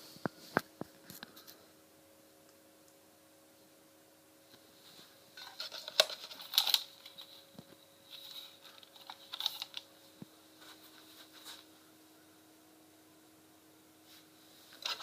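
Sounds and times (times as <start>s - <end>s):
irregular clicks and rattles: 5.4s - 9.9s.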